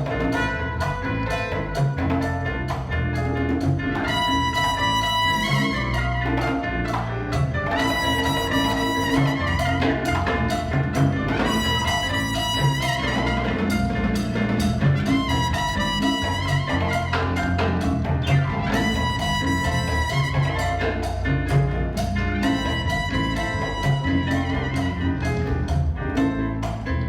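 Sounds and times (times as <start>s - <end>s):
latin jazz band playing: 0.0s - 27.0s
trumpet long held notes: 0.3s - 1.3s, 4.0s - 6.7s, 7.7s - 10.7s, 11.3s - 14.3s, 15.0s - 18.0s, 18.6s - 21.2s, 22.5s - 25.5s.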